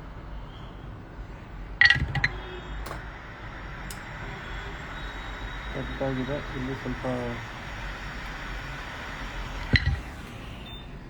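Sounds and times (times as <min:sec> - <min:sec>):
steady hissing noise: 0:00.0 - 0:11.0.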